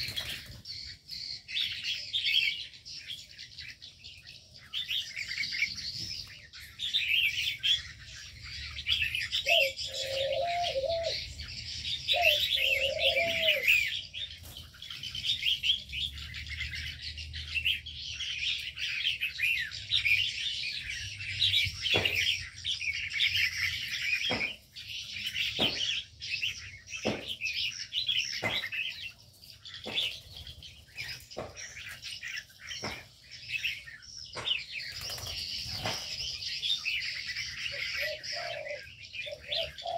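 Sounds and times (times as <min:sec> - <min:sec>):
small birds chirping: 0:00.0 - 0:39.9
dove cooing: 0:09.4 - 0:13.9, 0:37.7 - 0:39.9.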